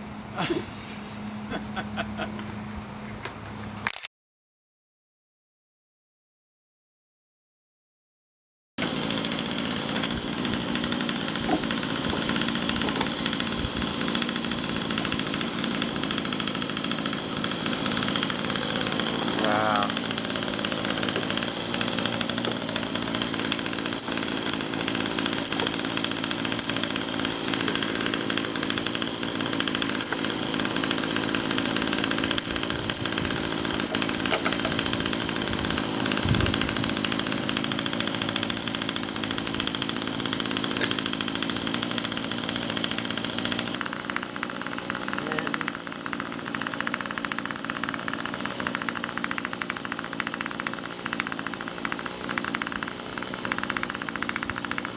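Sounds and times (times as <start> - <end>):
bee swarm buzzing: 8.8 - 43.6.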